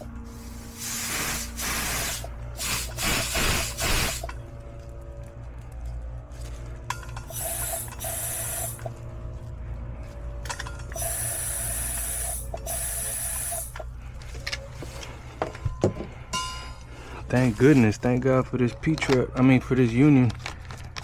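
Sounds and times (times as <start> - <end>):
pressurized gas hissing: 0.0 - 4.4, 7.3 - 8.9, 11.0 - 13.8
steady low hum: 0.0 - 21.0.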